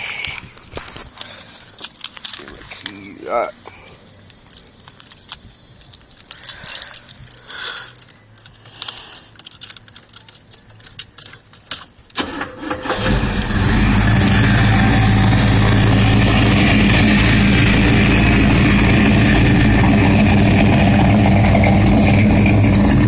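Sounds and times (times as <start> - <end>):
car keys jangling: 0.2 - 15.0
engine cranking and starting: 12.1 - 23.0
loud engine running: 12.2 - 23.0.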